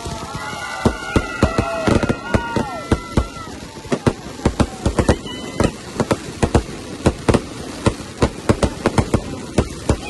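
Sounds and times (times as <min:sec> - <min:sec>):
firework whistle: 0:00.0 - 0:07.4
firecracker bangs: 0:00.0 - 0:10.0.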